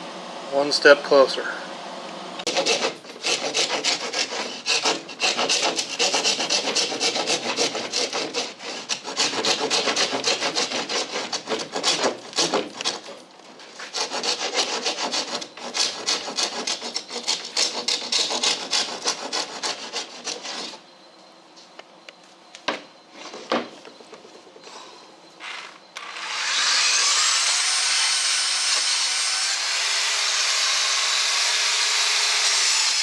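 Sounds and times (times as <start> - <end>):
hand sanding wood: 2.4 - 20.8.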